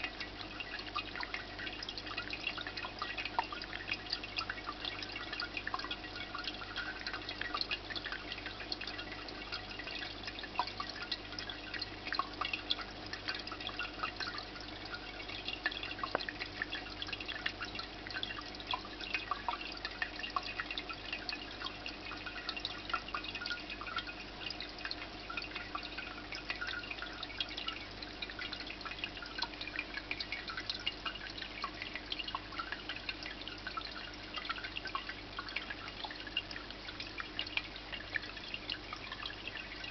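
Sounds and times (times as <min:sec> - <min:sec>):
water trickling and dripping: 0:00.0 - 0:39.9.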